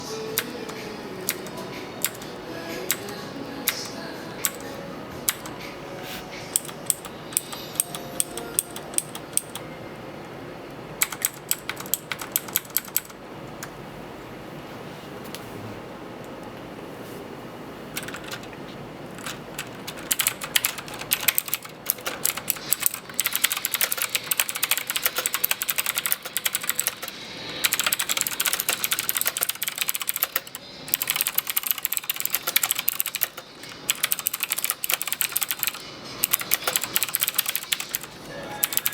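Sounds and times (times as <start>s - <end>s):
mechanical keyboard typing: 0.3s - 2.3s, 2.9s - 4.7s, 5.3s - 5.6s, 6.5s - 9.6s, 11.0s - 13.8s, 17.9s - 38.9s.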